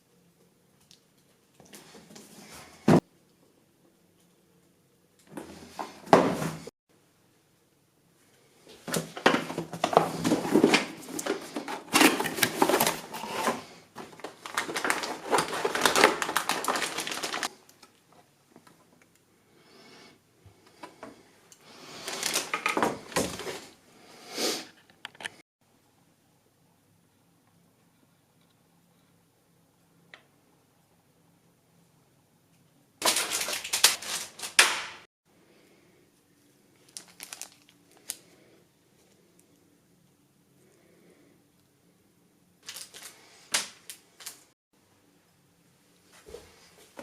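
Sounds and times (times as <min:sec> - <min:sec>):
hands handling computer parts: 0:08.7 - 0:18.0, 0:22.0 - 0:23.8, 0:33.0 - 0:35.0.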